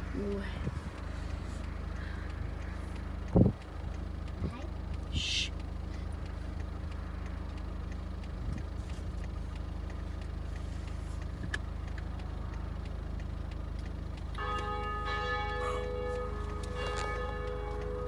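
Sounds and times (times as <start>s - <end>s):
church bell ringing: 14.4s - 18.0s.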